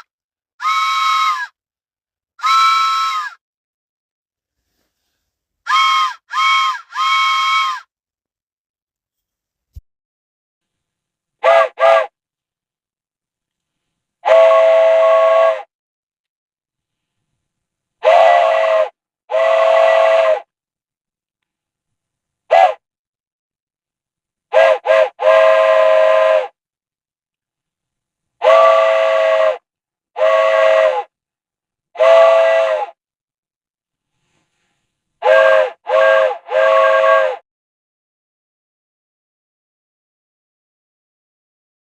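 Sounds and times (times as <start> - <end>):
train whistle blasts: 0.6 - 1.6, 2.4 - 3.4, 5.7 - 7.9, 11.4 - 12.1, 14.2 - 15.7, 18.0 - 20.5, 24.5 - 26.6, 28.4 - 29.6, 30.2 - 31.1, 32.0 - 33.0, 35.2 - 37.4.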